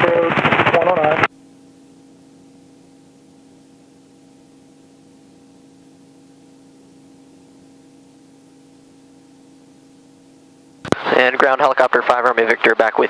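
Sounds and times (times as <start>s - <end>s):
electrical hum: 0.0s - 13.0s
radio hiss: 10.8s - 13.0s.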